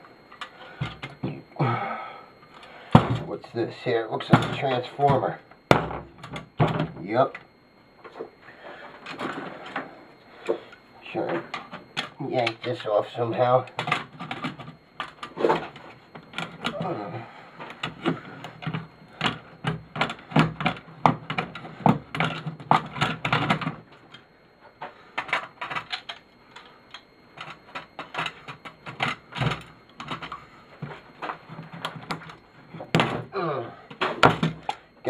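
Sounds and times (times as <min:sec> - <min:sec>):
metal parts clicking and knocking: 0:25.2 - 0:30.4.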